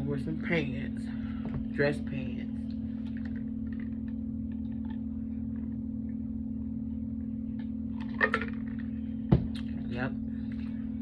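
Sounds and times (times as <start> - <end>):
low hum: 0.0 - 11.0
person chewing with wet clicks: 3.0 - 5.8.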